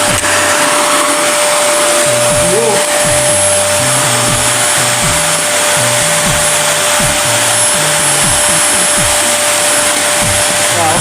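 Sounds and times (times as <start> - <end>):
vacuum cleaner running: 0.0 - 11.0.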